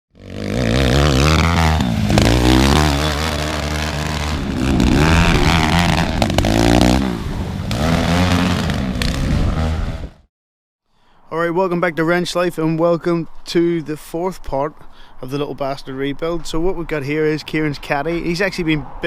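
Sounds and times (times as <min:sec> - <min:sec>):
engine revving: 0:00.2 - 0:10.2.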